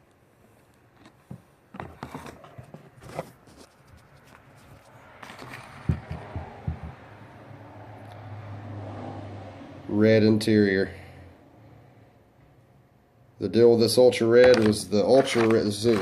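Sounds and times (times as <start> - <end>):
plastic packaging clicking and rustling: 14.4 - 16.0.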